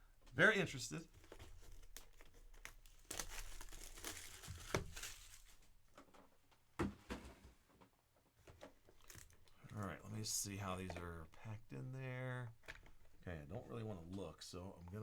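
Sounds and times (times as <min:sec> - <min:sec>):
plastic wrapping tearing and crinkling: 0:01.2 - 0:05.8, 0:08.9 - 0:09.5.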